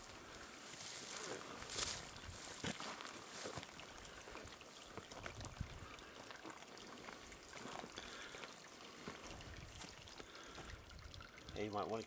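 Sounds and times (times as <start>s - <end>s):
footsteps through dry leaves: 0.0s - 3.6s.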